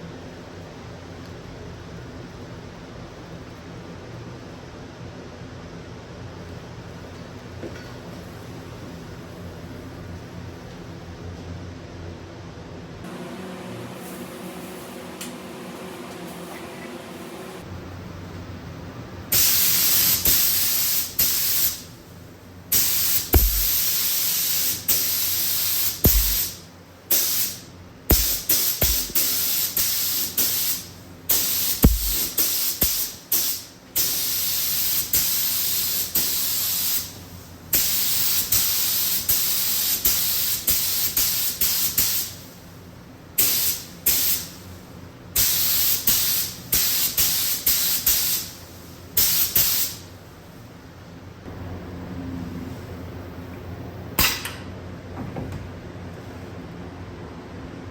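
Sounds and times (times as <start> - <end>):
spray gun hissing: 13.1 - 17.7, 19.3 - 22.0, 22.7 - 42.5, 43.4 - 44.6, 45.4 - 50.1
low thumps: 23.4 - 23.7, 31.8 - 32.2.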